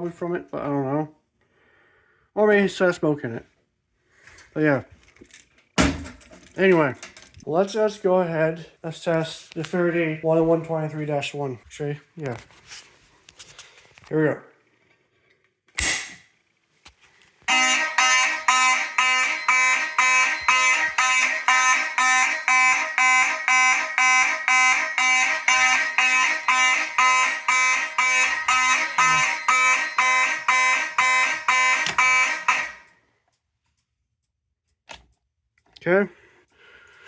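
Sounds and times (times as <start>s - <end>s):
fire alarm horn pulsing: 17.5s - 33.0s.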